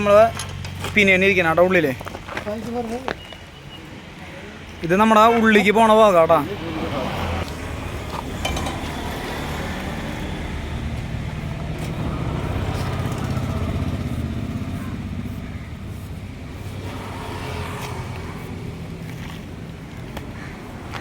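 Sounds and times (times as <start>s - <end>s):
vehicle engine pulsing: 7.1s - 21.0s.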